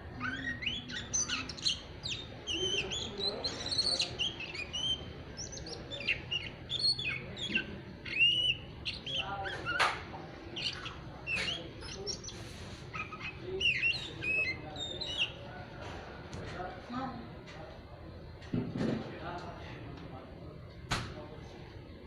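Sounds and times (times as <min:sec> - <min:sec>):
bird twittering chirps and whistles: 0:00.0 - 0:15.6.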